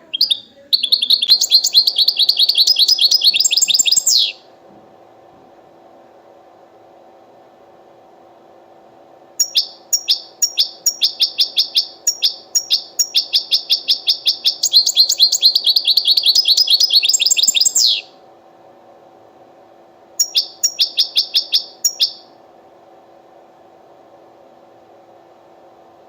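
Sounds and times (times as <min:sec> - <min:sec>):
bird singing trill: 0:00.0 - 0:04.4, 0:09.4 - 0:18.1, 0:20.2 - 0:22.3
faint steady hum: 0:00.0 - 0:26.0.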